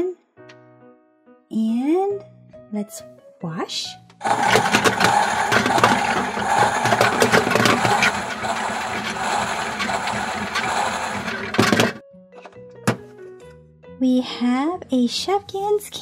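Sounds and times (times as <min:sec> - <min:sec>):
toy washing machine motor whirring: 0:04.2 - 0:12.0.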